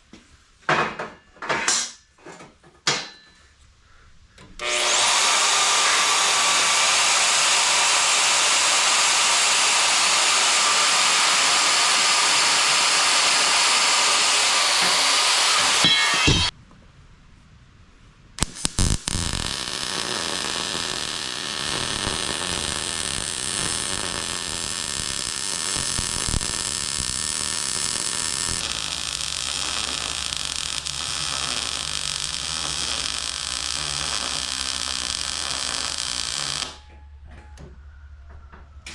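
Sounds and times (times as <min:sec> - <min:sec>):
angle grinder grinding steel: 0:04.6 - 0:16.5, 0:18.4 - 0:36.8.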